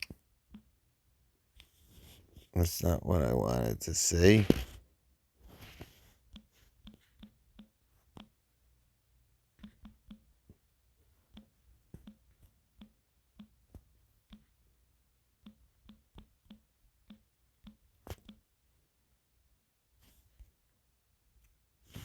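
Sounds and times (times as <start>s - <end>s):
computer mouse clicking: 6.3s - 8.4s, 9.6s - 10.6s, 11.2s - 14.6s, 15.4s - 18.5s.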